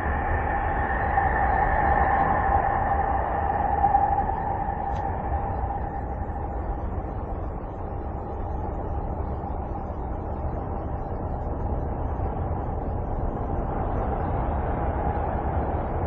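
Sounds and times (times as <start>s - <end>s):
rushing drone: 0.0s - 10.7s
deep rumble: 0.0s - 16.0s.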